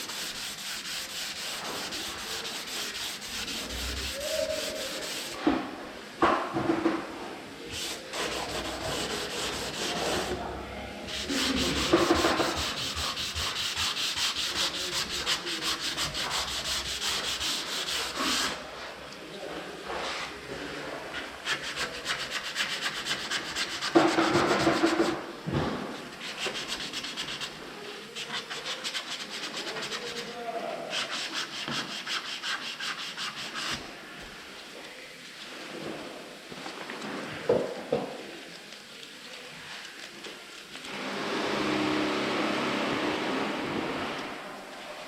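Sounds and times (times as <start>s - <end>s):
sandpaper rubbing on body filler: 0.0s - 5.4s, 7.7s - 10.4s, 11.1s - 18.6s, 21.4s - 25.2s, 26.2s - 33.9s.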